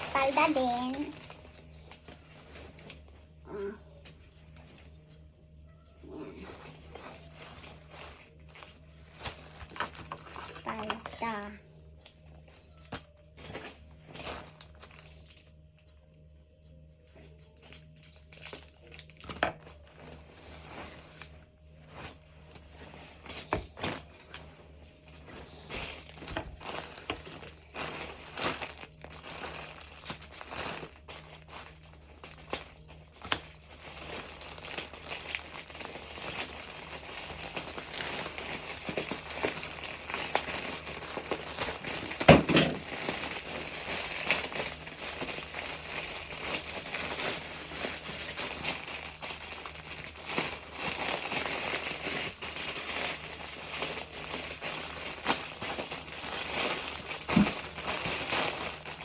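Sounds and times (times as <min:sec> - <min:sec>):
plastic packaging crinkling: 0:00.0 - 0:05.3, 0:06.0 - 0:15.9, 0:17.1 - 0:59.0
plastic tearing: 0:06.0 - 0:11.4, 0:17.5 - 0:24.5, 0:25.1 - 0:59.0.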